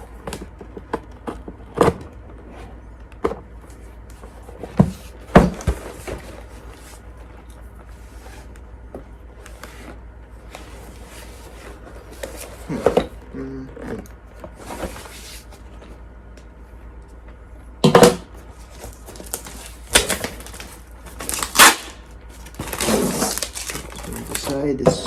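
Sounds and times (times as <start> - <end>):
packaging knocks and clicks: 17.9 - 25.0
packaging rustling: 18.4 - 25.0.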